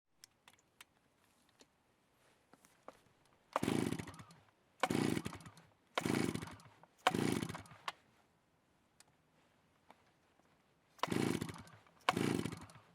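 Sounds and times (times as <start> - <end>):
chainsaw bursts: 3.6 - 7.9, 11.0 - 12.9.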